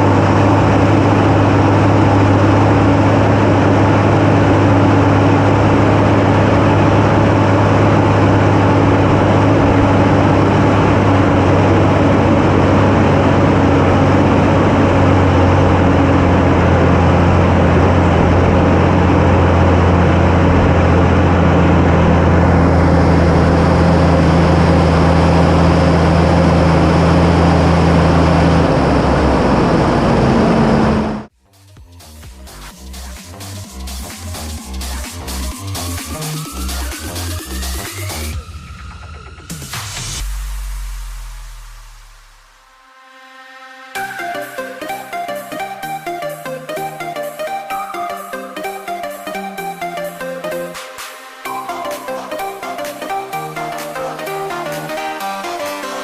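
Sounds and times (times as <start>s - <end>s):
harvesting machinery running: 0.0s - 39.4s
tractor engine droning: 0.0s - 42.8s.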